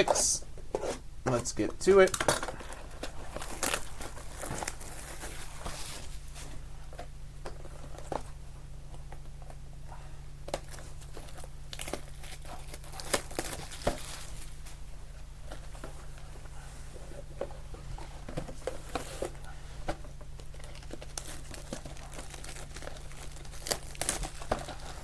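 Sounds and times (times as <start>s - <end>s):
faint steady hum: 0.0s - 25.0s
plastic wrapping crinkling and tearing: 2.0s - 6.2s, 10.5s - 14.8s, 20.4s - 25.0s.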